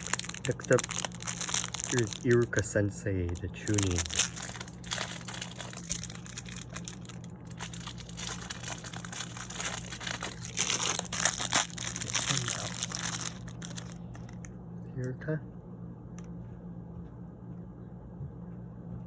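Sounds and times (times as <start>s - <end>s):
plastic packaging crinkling: 0.0s - 14.5s.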